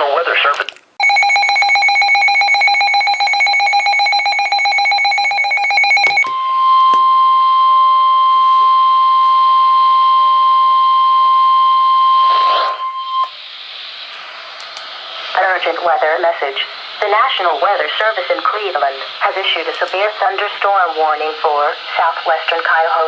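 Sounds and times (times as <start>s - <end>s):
steady single-pitch alarm tone: 1.0s - 15.6s.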